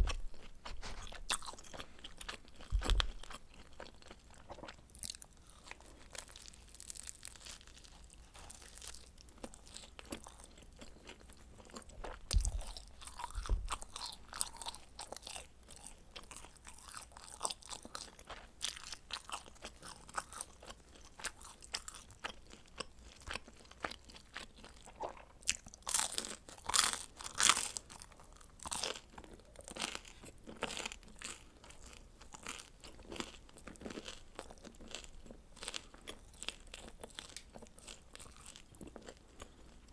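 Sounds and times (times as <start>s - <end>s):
chewing and crunching pizza: 0.0s - 39.9s
dull thumps: 2.7s - 3.3s.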